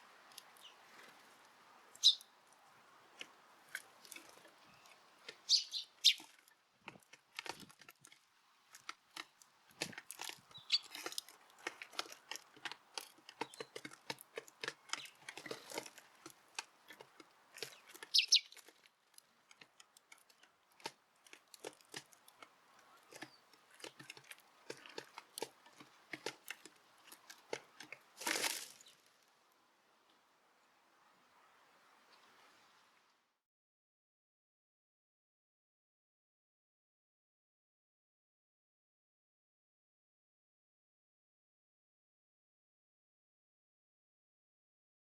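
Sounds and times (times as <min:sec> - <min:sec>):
birds pecking at seed: 0:00.0 - 0:29.6.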